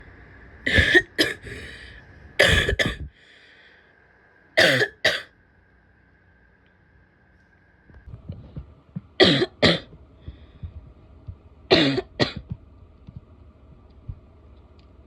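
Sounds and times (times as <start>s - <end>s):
woman coughing harshly: 0.7s - 1.5s, 2.4s - 3.1s, 4.6s - 5.3s, 9.2s - 9.9s, 11.7s - 12.5s.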